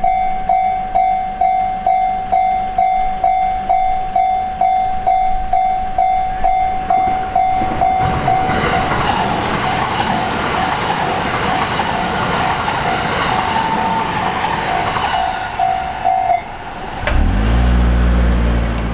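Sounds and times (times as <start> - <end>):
railroad crossing alarm dinging: 0.0 - 17.1
train rumbling and clattering: 2.2 - 18.9
car engine pulling away: 16.7 - 18.9.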